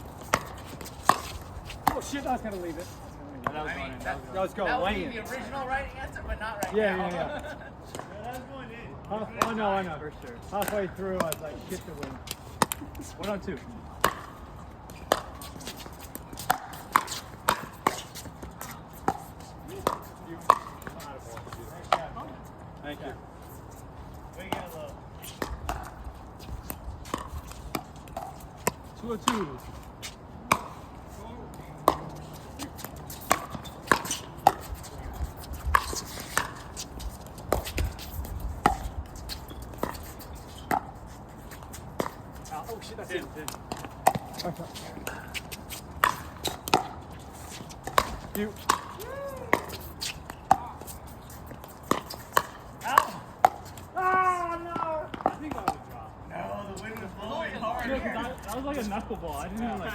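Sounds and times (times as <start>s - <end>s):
ball bouncing: 0.2s - 2.1s, 14.0s - 14.4s, 30.5s - 30.8s, 31.8s - 41.0s, 43.4s - 54.2s
paddles hitting pickleball: 0.2s - 2.8s, 9.4s - 9.8s, 10.4s - 22.3s, 24.4s - 30.9s, 31.5s - 59.9s.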